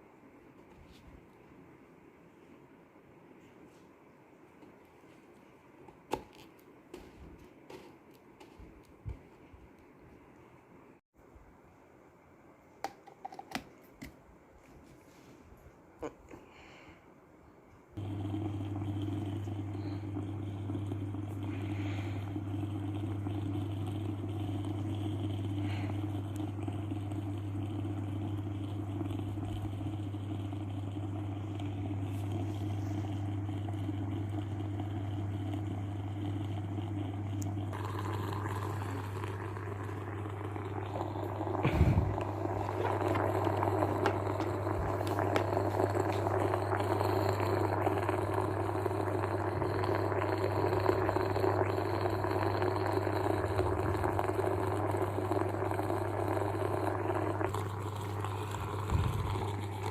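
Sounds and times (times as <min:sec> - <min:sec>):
steam vaporiser electrical hum: 0:14.8 - 0:59.9
water bubbling and hissing: 0:18.0 - 0:59.9.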